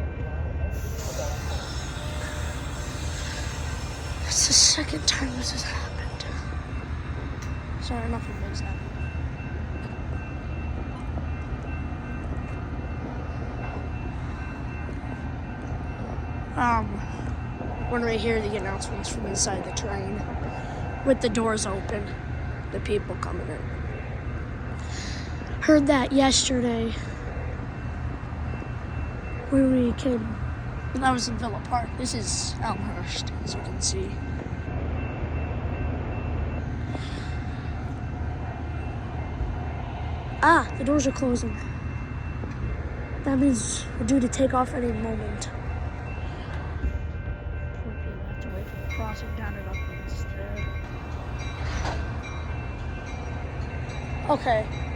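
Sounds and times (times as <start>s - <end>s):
diesel locomotive rumble: 0.0s - 54.9s
high-pitched whine: 0.1s - 10.0s.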